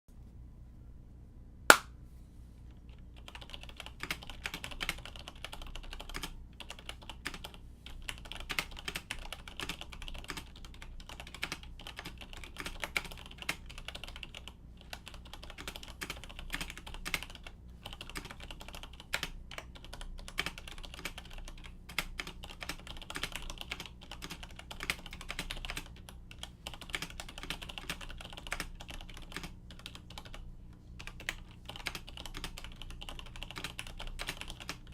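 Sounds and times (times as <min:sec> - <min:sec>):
sharp click: 0:01.7 - 0:01.9.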